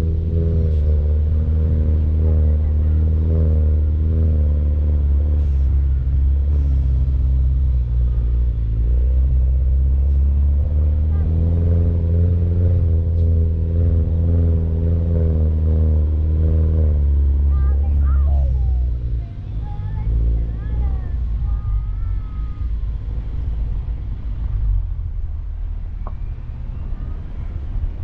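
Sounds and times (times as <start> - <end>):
car engine droning: 0.0 - 28.0
heavy low rumble: 0.0 - 28.0.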